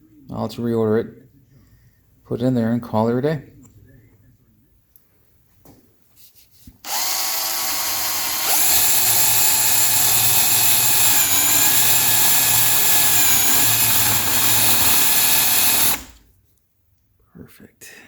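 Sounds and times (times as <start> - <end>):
electric drill boring plastic: 6.9 - 16.2.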